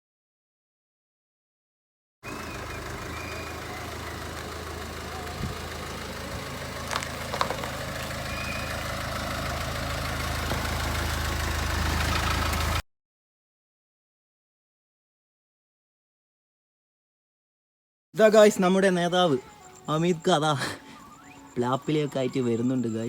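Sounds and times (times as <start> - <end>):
vehicle engine humming: 2.2 - 12.8, 18.2 - 23.0.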